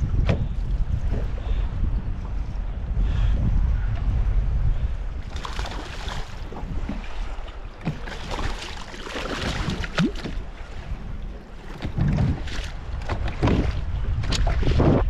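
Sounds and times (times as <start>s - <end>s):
wind rumbling on microphone: 0.0s - 15.0s
waves splashing against boat hull: 5.2s - 15.0s.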